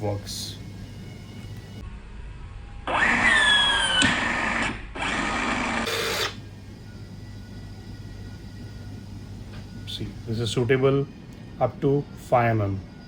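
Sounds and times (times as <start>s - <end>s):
rivet tool motor whining: 2.9s - 6.4s.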